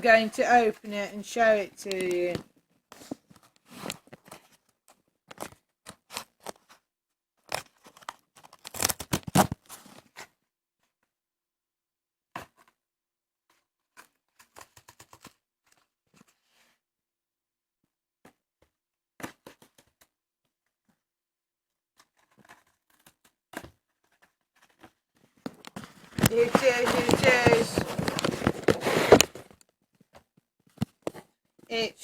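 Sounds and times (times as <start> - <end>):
parcel packaging tearing: 7.5 - 9.6, 25.8 - 29.5
light rustles and clicks: 25.5 - 29.6.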